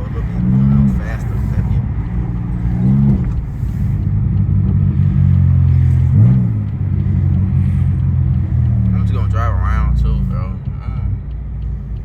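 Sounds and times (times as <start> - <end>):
car exhaust droning: 0.0 - 12.0.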